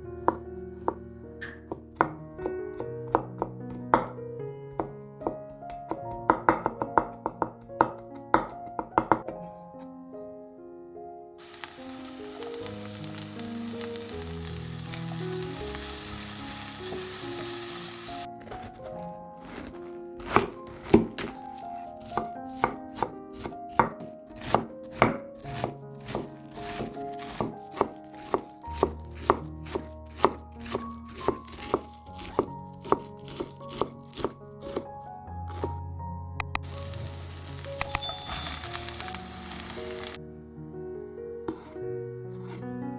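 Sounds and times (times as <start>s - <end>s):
soft background music: 0.0s - 42.9s
knife chopping on cutting board: 0.2s - 4.1s, 4.7s - 9.5s, 18.4s - 34.8s, 41.5s - 41.8s
food sizzling in a pan: 11.4s - 18.3s, 36.6s - 40.2s.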